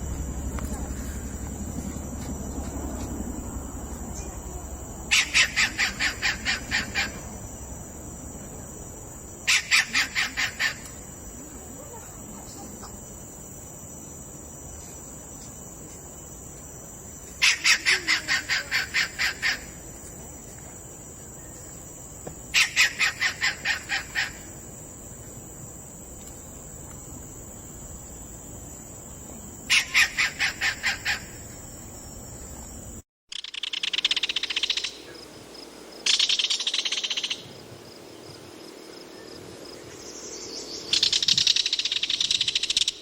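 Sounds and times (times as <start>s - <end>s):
steady high-pitched whine: 0.0s - 17.4s
kingfisher calling: 5.1s - 7.3s.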